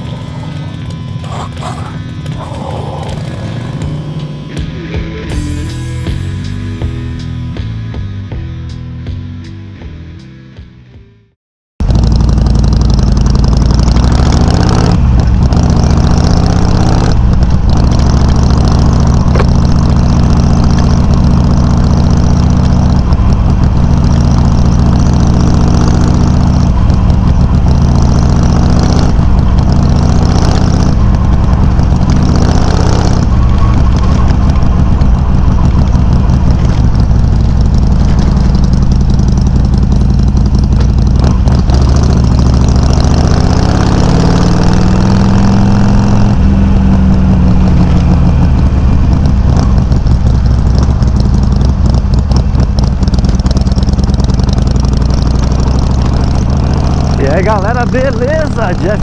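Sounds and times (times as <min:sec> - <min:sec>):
motorcycle engine running loud: 0:00.0 - 0:09.4, 0:11.8 - 0:59.0.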